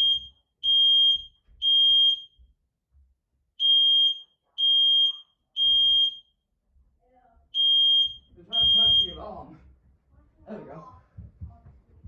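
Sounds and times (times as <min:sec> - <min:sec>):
smoke alarm beeping: 0:00.0 - 0:02.5, 0:03.6 - 0:06.4, 0:07.6 - 0:09.3.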